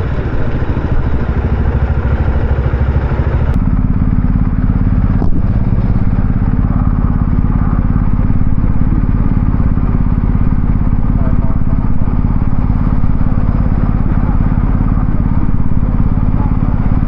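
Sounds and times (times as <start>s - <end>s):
motorcycle engine running: 0.0s - 17.0s.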